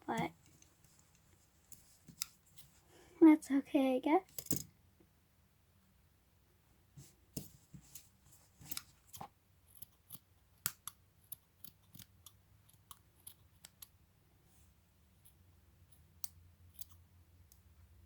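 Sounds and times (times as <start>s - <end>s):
scissors snipping cloth: 8.6s - 13.9s.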